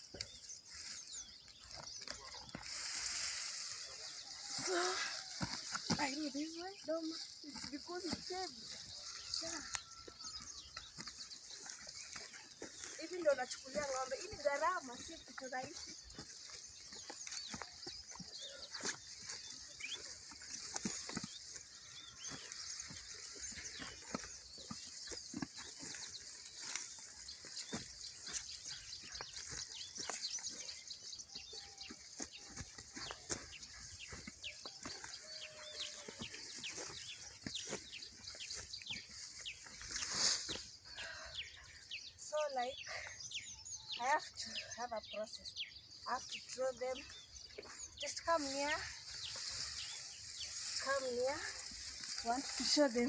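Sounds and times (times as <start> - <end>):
rustles and crackles: 48.0 - 53.0.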